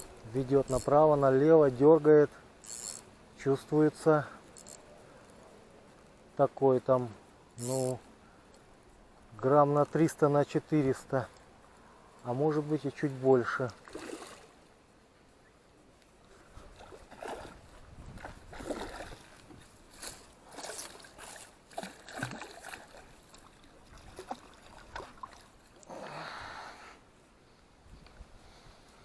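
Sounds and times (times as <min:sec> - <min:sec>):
fish splashing in water: 0:16.7 - 0:25.9.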